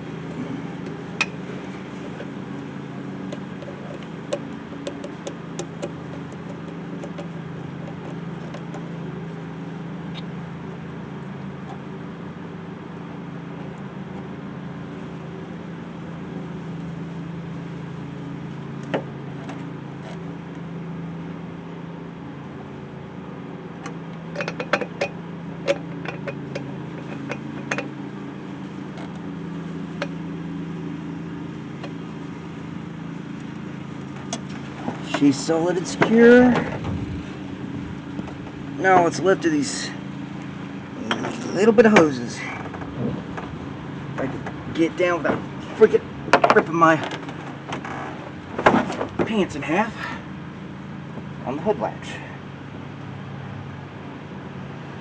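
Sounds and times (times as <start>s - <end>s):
steady engine hum: 0.0s - 55.0s
metal tool clinks and taps: 24.4s - 27.9s.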